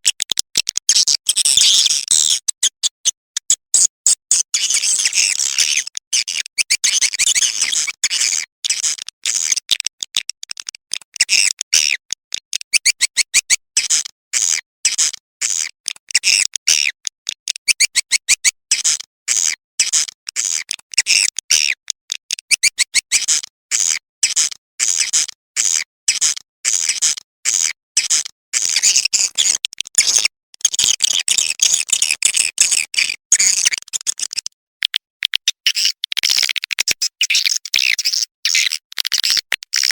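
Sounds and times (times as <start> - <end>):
high-pitched bird twittering: 6.6 - 8.4, 12.7 - 13.5.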